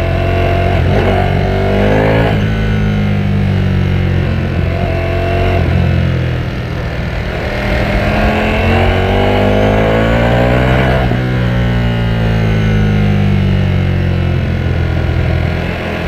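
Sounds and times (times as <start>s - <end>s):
motorcycle engine accelerating: 0.0s - 16.0s.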